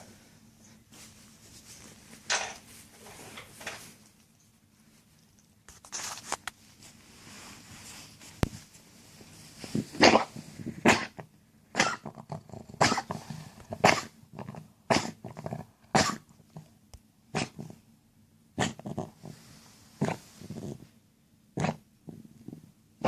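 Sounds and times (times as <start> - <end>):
pet wet gurgling cough: 11.8 - 15.2, 15.9 - 16.3.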